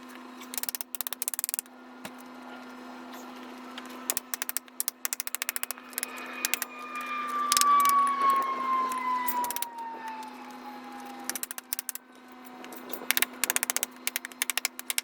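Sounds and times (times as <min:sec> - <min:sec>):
rapid clicking: 0:04.1 - 0:06.7, 0:13.1 - 0:15.0
power tool motor winding down: 0:05.1 - 0:14.9.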